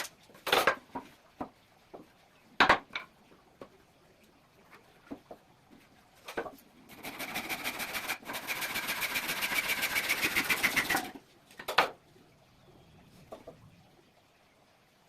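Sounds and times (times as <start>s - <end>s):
woodworking tool rapid clicks: 6.9s - 11.2s.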